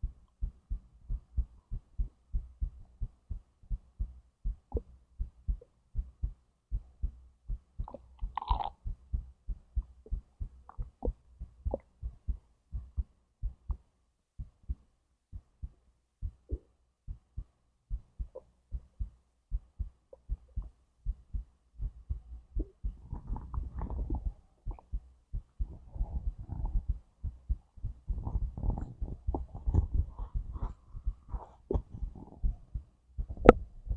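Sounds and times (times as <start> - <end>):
heartbeat thumps: 0.0 - 33.9
digestive gurgles: 7.9 - 8.7.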